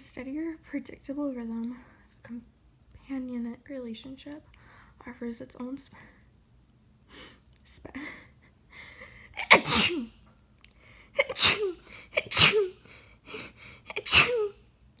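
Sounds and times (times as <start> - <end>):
woman sneezing: 9.4 - 10.1, 11.2 - 12.8, 13.9 - 14.6.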